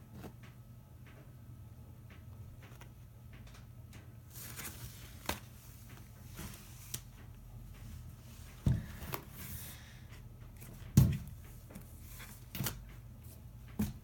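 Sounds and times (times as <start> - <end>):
paper rustling: 4.3 - 7.2.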